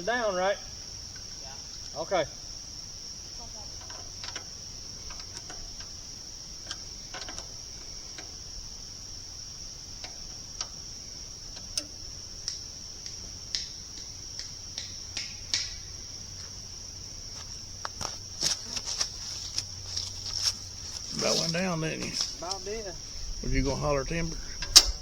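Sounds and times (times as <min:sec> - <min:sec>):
high-pitched insect chorus: 0:00.0 - 0:25.0
light clicks and knocks: 0:03.7 - 0:06.0, 0:06.6 - 0:08.5.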